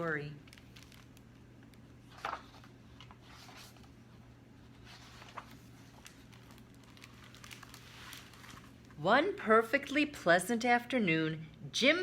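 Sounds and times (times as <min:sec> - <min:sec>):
faint rustling and handling: 0:00.0 - 0:09.0.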